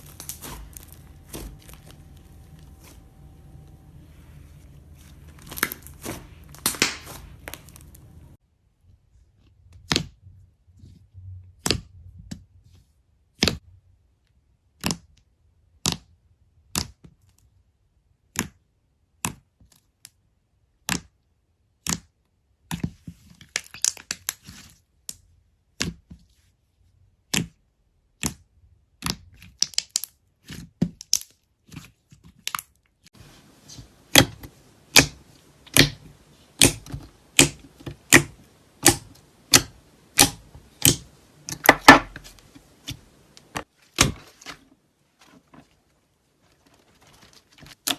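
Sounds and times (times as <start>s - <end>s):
slime air pockets popping: 0.0s - 3.9s, 4.9s - 8.4s, 33.2s - 44.6s.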